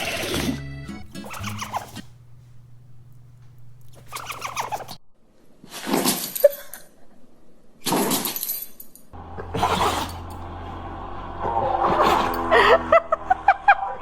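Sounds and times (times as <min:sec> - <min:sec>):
dog sneezing: 0:01.2 - 0:02.1, 0:09.5 - 0:10.2.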